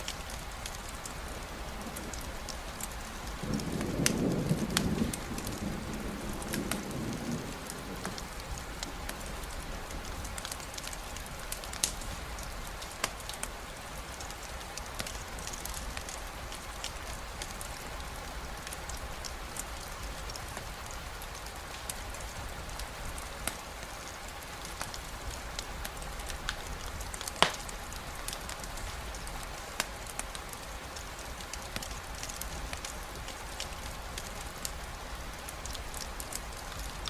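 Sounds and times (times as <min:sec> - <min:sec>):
steady rain falling: 0:00.0 - 0:37.0
thunder rumble: 0:01.1 - 0:11.8
sharp clicks and pops: 0:27.3 - 0:27.7.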